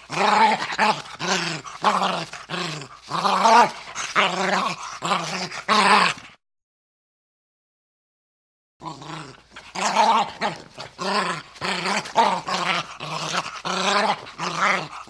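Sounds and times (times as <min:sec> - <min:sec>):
dog growling: 0:00.0 - 0:06.4, 0:08.8 - 0:15.0.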